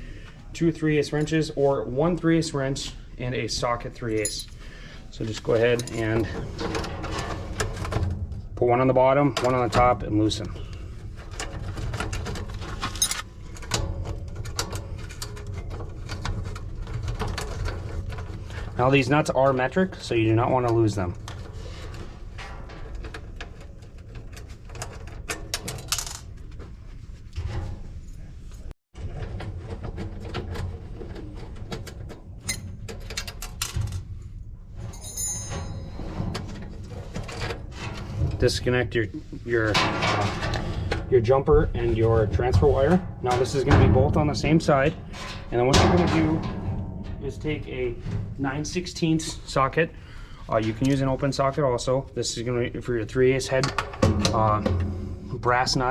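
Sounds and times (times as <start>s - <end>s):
wrench clinking on metal nuts: 12.9s - 13.7s
high metallic ring: 34.9s - 36.0s.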